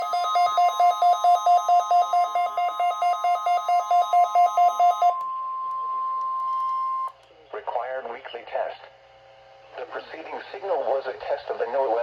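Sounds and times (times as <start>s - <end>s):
rapid pulsing alarm beep: 0.0s - 5.2s
steady warning alarm tone: 0.0s - 5.7s.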